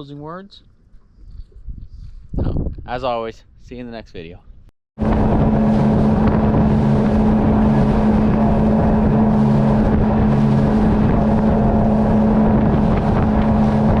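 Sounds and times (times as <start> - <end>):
wind on microphone: 1.1 - 14.0
outboard motor running: 5.0 - 14.0.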